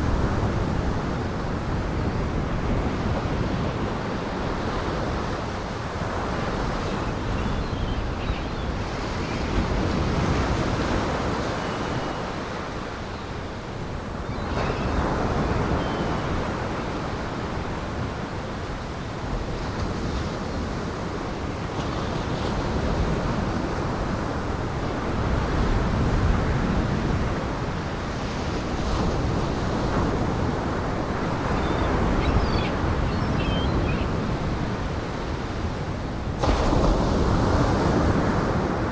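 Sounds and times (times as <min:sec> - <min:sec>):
wind: 0:00.0 - 0:38.9
waves breaking on shore: 0:02.4 - 0:38.9.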